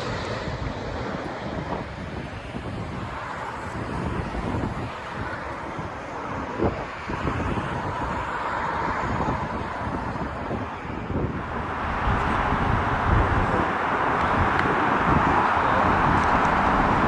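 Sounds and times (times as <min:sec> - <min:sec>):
wind buffeting microphone: 0:00.0 - 0:17.0
jet engines whining: 0:11.3 - 0:17.0.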